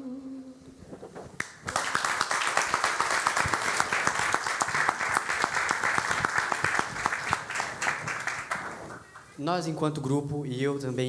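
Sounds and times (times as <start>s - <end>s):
audience applauding: 1.4s - 9.3s.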